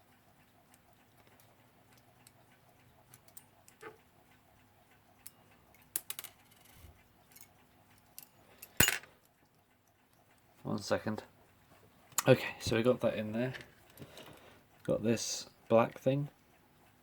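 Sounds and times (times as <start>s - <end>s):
small metal parts clicking: 5.2s - 9.4s.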